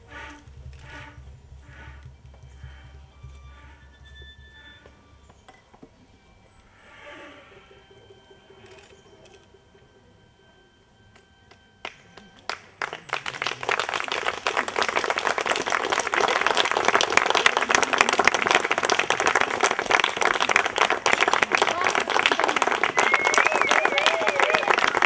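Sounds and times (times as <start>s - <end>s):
faint music tones: 0.0s - 25.0s
audience applause: 11.5s - 25.0s.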